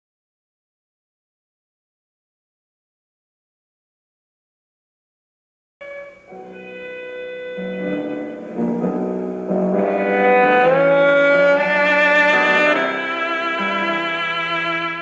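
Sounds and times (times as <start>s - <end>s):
cello: 5.8s - 15.0s
violin: 5.8s - 15.0s.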